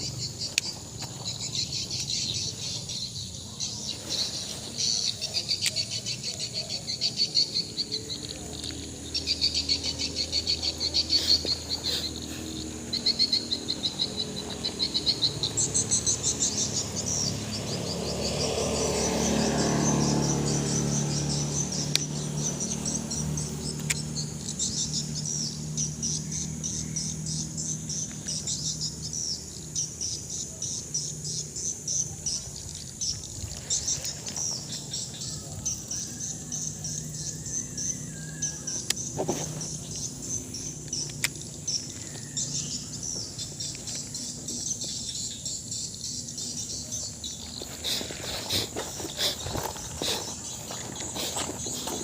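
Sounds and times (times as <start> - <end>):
insects chirping: 0.0 - 52.0
sharp clicks: 23.7 - 24.1, 40.8 - 41.5.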